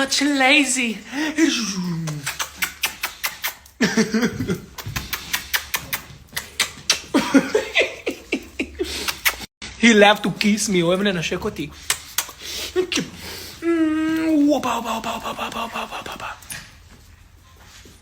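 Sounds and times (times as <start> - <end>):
dog licking wet smacks: 2.0 - 3.8, 4.7 - 7.7, 9.0 - 9.5, 11.7 - 13.2
laughter: 3.8 - 4.8, 7.1 - 9.4
man's voice: 13.8 - 16.5.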